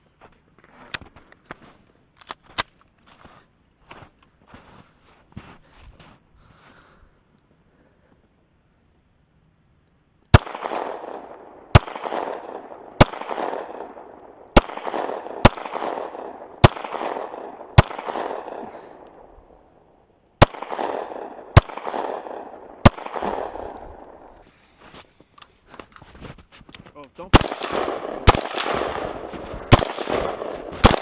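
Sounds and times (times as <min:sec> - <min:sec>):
gunshots with ringing echo: 0:10.3 - 0:24.4, 0:27.3 - 0:31.0.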